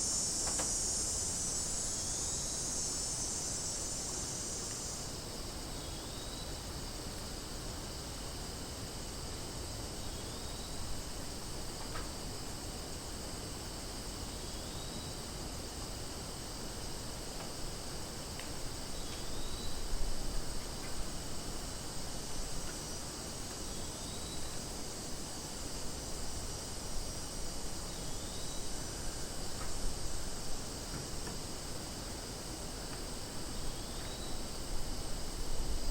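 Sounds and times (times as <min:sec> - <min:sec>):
cicadas buzzing: 0:00.0 - 0:35.9.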